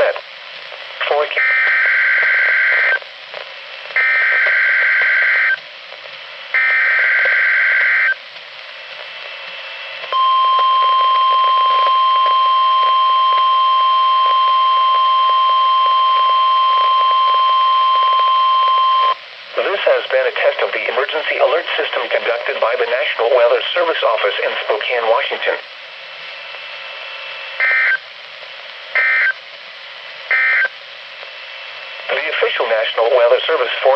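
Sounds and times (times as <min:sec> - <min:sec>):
steady warning alarm tone: 0:10.2 - 0:19.2, 0:30.3 - 0:30.7.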